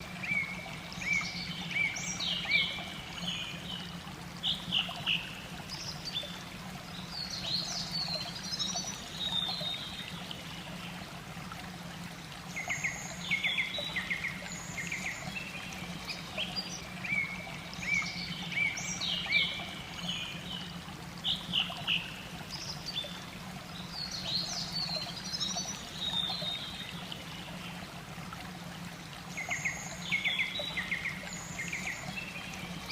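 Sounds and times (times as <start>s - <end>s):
stream trickling: 0.0s - 32.9s
songbird singing: 0.2s - 11.0s, 12.6s - 23.2s, 29.3s - 32.9s.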